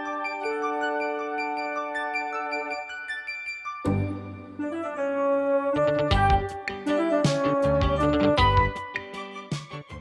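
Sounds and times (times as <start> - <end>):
instrumental music with steady beat: 5.8 - 10.0.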